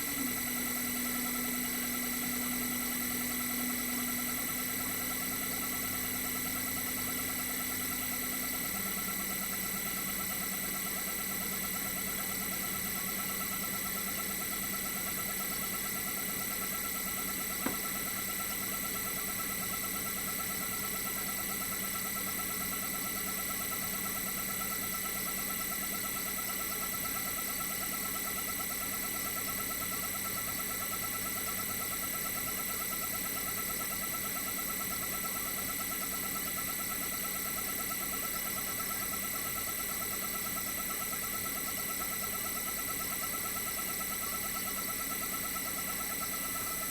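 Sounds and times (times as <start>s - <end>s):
compressor low hum: 0.0s - 5.2s
compressor high electronic whine: 0.0s - 46.9s.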